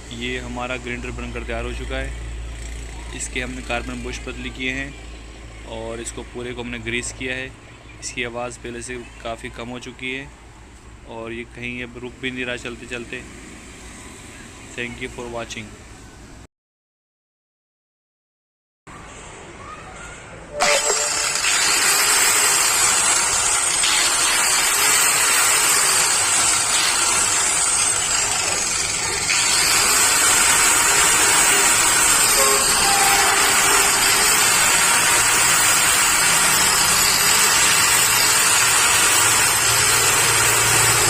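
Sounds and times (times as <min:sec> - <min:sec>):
electric grinder whirring: 0:20.6 - 0:41.0.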